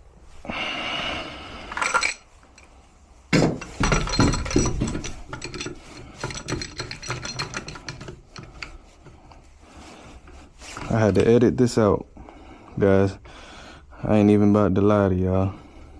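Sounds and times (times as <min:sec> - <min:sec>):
pipe wrenches clanking on metal: 0:01.7 - 0:02.7, 0:03.3 - 0:09.3, 0:10.2 - 0:11.4.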